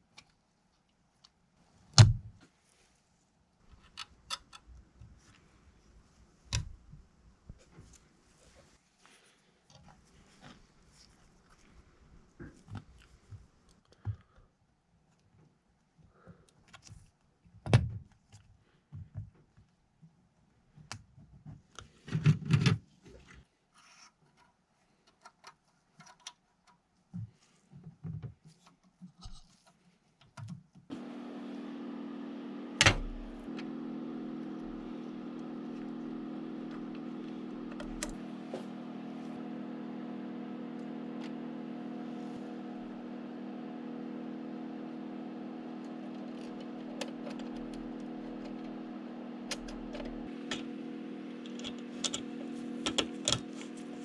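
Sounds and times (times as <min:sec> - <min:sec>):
car engine idling: 0:30.9 - 0:54.0.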